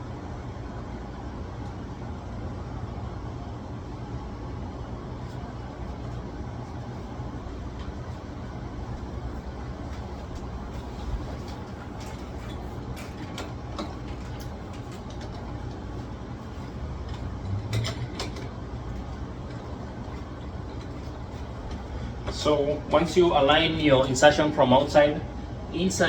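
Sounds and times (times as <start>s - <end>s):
steady low rumble: 0.0s - 12.9s.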